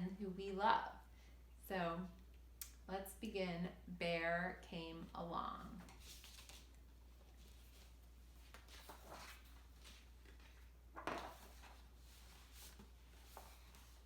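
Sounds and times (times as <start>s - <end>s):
soft rustling: 5.6s - 14.0s.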